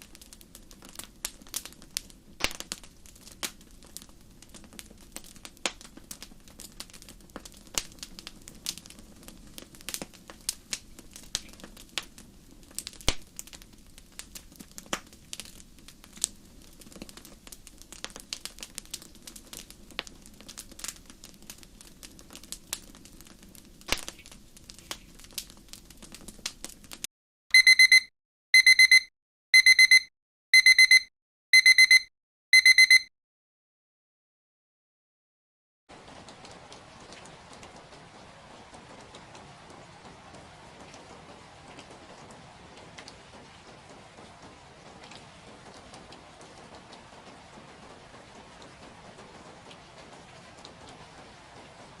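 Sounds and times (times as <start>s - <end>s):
crackling clicks and pops: 0.0s - 27.1s
digital timer alarm beeping: 27.5s - 33.1s.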